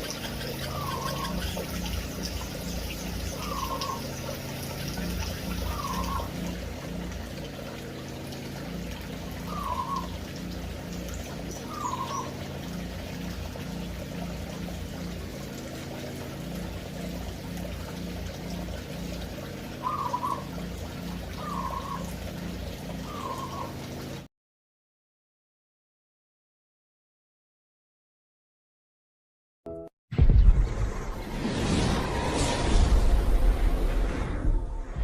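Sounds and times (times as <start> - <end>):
finches calling: 0.0 - 6.6, 9.2 - 13.8, 19.7 - 23.8.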